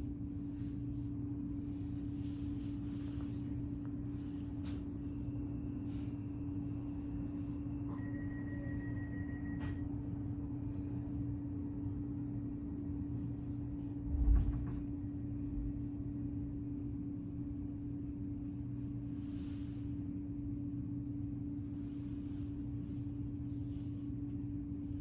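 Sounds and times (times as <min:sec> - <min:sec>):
train electrical hum: 0:00.0 - 0:25.0
low rumble: 0:13.7 - 0:17.0.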